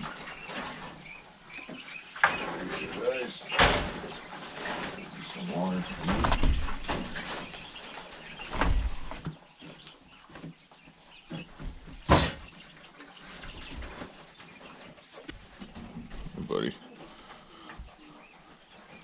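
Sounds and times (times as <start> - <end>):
caged birds chirping: 0.0 - 19.0
knocks from handling cages: 3.5 - 4.2, 11.6 - 12.6.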